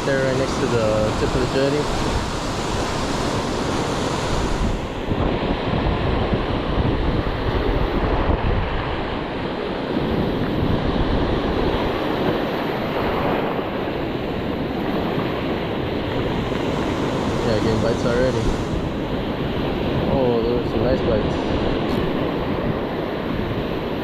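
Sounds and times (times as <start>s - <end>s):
ocean surf washing in: 0.0s - 24.0s
wind on microphone: 0.0s - 24.0s.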